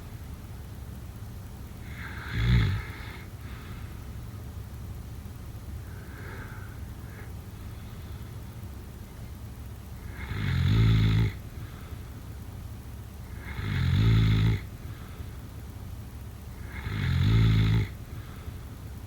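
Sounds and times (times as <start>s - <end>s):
person snoring: 1.9s - 3.2s.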